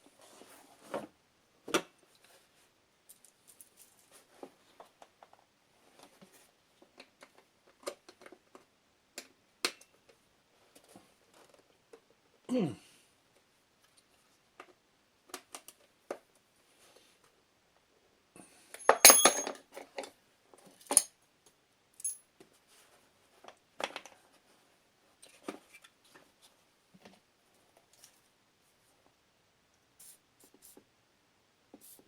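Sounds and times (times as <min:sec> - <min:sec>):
metal tools tapping and clicking: 0:18.8 - 0:19.6, 0:22.0 - 0:22.2
ringing metal clatter: 0:18.8 - 0:19.6
sharp metal clink: 0:18.8 - 0:19.6.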